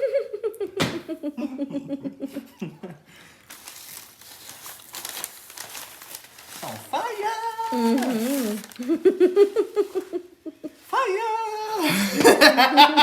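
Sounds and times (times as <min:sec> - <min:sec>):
crinkling and rustling: 0:03.4 - 0:11.0
person groaning: 0:06.6 - 0:08.8.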